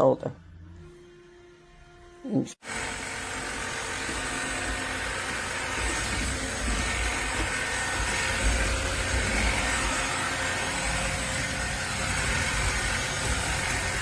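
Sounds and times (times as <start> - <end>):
vacuum cleaner running: 0.6 - 14.0.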